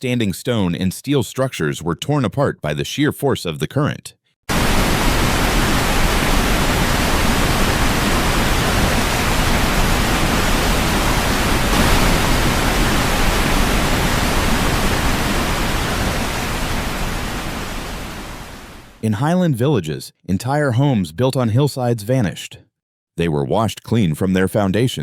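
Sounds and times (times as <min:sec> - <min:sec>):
floodwater rushing: 0:04.5 - 0:19.0.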